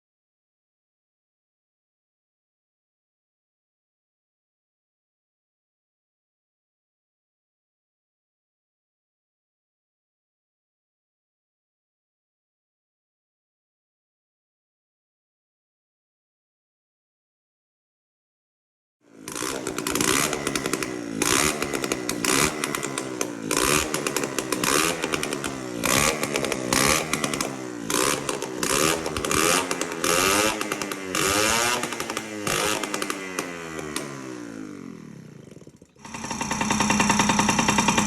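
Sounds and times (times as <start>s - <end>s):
two-stroke engine revving: 19.1s - 38.0s.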